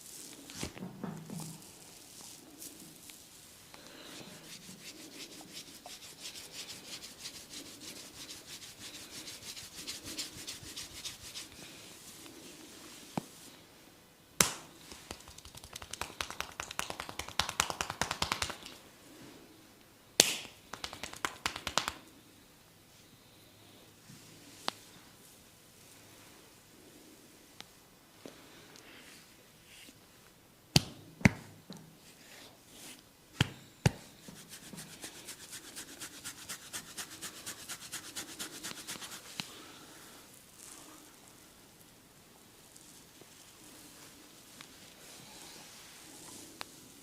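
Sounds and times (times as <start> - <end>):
fingers scratching through hair: 4.2 - 11.6, 14.8 - 18.8, 20.7 - 22.0, 33.9 - 39.5.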